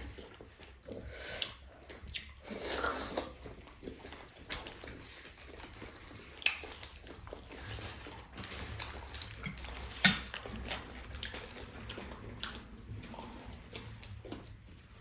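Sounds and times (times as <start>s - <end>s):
food packaging rustling: 4.4s - 13.0s.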